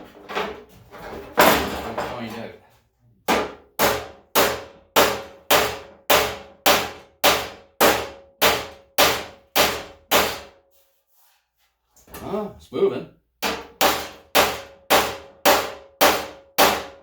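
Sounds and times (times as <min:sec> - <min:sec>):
hammer striking metal: 0:03.3 - 0:10.5, 0:13.4 - 0:17.0.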